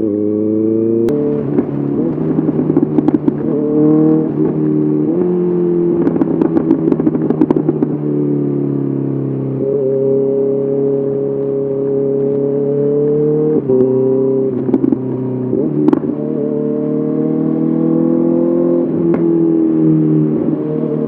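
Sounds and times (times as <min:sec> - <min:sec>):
motorcycle engine under load: 0:00.0 - 0:21.0
exhaust cracks: 0:01.1 - 0:08.0, 0:13.0 - 0:16.7.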